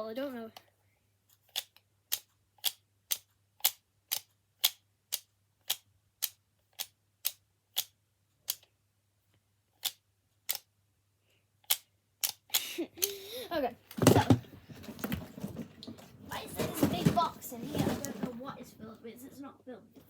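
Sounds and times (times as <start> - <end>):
fidget toy clicking: 1.3 - 8.8, 9.7 - 10.7, 11.6 - 13.3.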